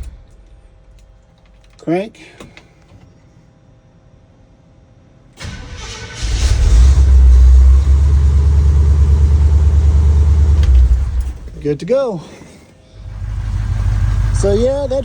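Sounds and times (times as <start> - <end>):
pickup engine cranking and running: 5.4 - 11.7, 13.0 - 15.0.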